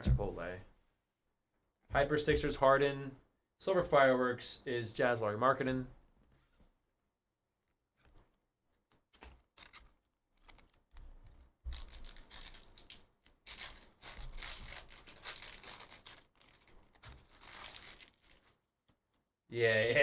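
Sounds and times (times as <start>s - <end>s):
card wrappers crinkling and tearing: 9.1s - 11.1s, 11.7s - 18.6s.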